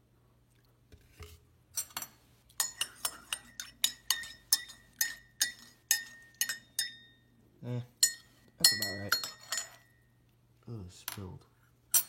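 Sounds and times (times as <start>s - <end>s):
spoon clinking in cup: 1.8s - 7.2s, 8.0s - 10.1s.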